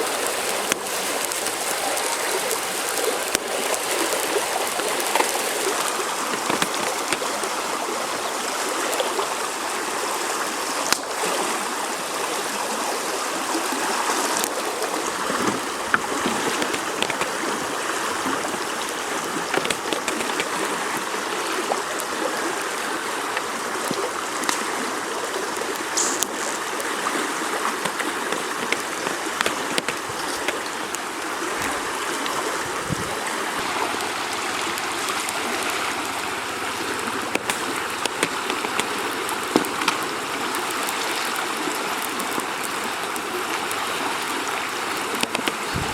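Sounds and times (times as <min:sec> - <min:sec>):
river water rushing: 0:00.0 - 0:45.9
faint clicks: 0:27.7 - 0:32.4.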